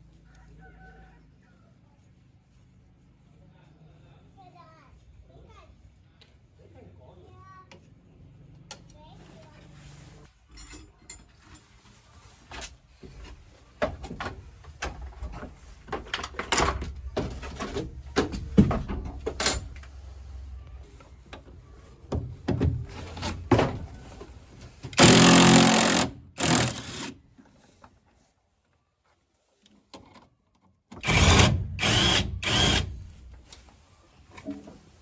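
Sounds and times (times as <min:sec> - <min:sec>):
tools clanking on metal: 0:10.4 - 0:11.8
power tool running: 0:25.0 - 0:27.2, 0:31.0 - 0:33.1.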